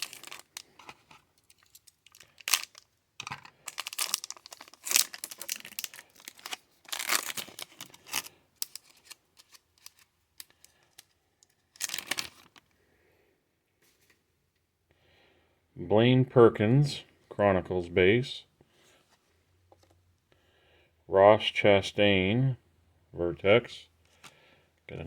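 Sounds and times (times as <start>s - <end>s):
plastic sleeves crinkling: 0.0s - 12.7s.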